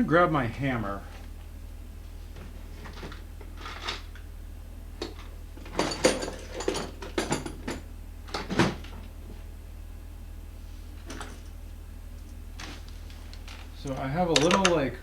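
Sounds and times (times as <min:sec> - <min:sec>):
metal tools clattering in toolbox: 0:05.6 - 0:07.8.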